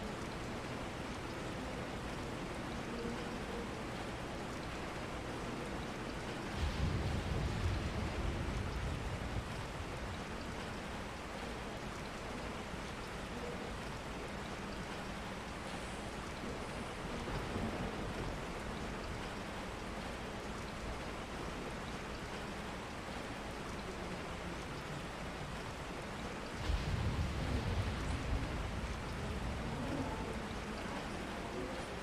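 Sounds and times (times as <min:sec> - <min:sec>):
steady rain: 0:00.0 - 0:32.0
low rumble: 0:26.6 - 0:31.0.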